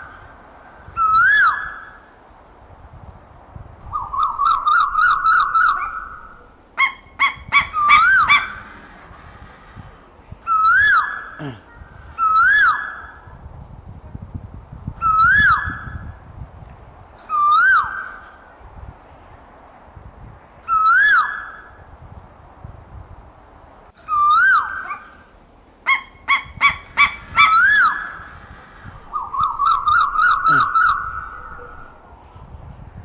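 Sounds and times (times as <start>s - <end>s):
bird swooping calls: 0.0s - 2.2s, 3.9s - 13.3s, 17.2s - 18.5s, 20.6s - 21.9s, 24.0s - 32.0s.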